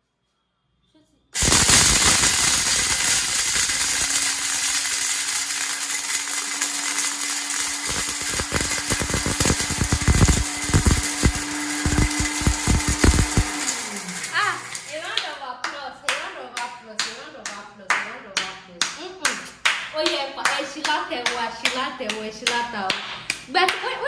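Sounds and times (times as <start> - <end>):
corn thumping in blender jar: 1.4 - 15.0
electric blender motor whirring: 1.4 - 15.2.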